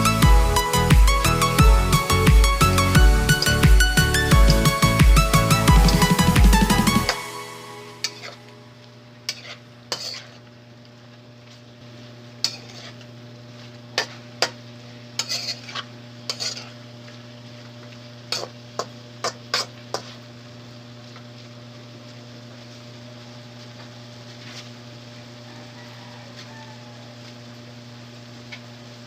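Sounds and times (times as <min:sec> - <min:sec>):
food sizzling: 0:00.0 - 0:10.4, 0:11.9 - 0:20.4
steady low hum: 0:00.0 - 0:10.8
metal utensil scraping a pan: 0:09.3 - 0:10.4, 0:12.4 - 0:13.0, 0:15.2 - 0:16.8.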